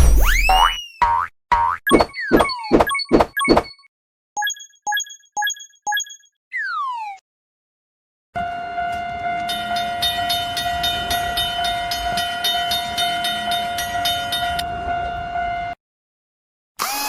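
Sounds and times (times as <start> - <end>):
train running noise: 8.4 - 15.7
railroad crossing bell: 8.4 - 15.8
train horn tone: 8.4 - 15.8.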